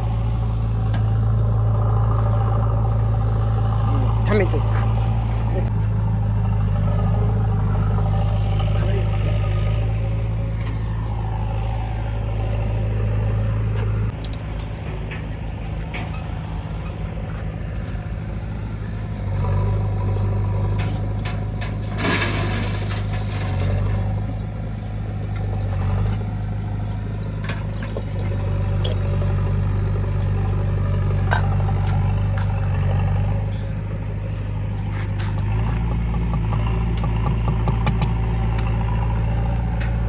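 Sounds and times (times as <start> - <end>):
diesel engine running: 0.0 - 40.0
sharp knocks: 35.3 - 38.2.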